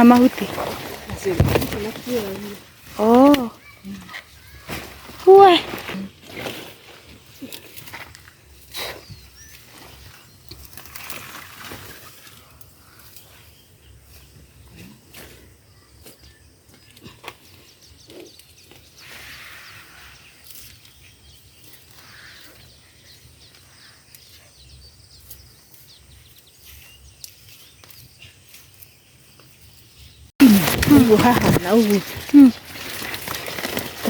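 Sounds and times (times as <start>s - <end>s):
leaves and stems rustling: 0.0s - 14.7s, 25.2s - 34.0s.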